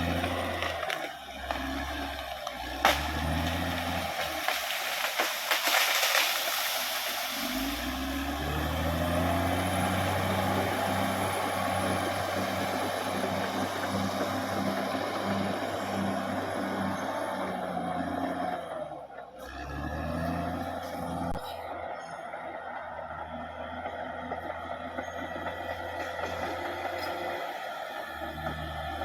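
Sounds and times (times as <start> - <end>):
bulldozer diesel engine revving: 0.0 - 29.0
sharp cracks and snaps: 2.4 - 7.2.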